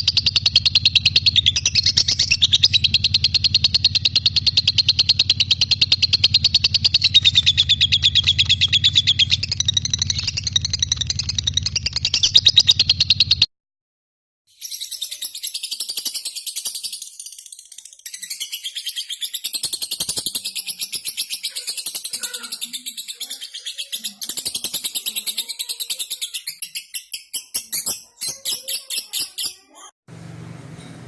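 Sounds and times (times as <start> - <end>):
lovebird chattering chirps: 0.0 - 13.5, 14.6 - 29.8.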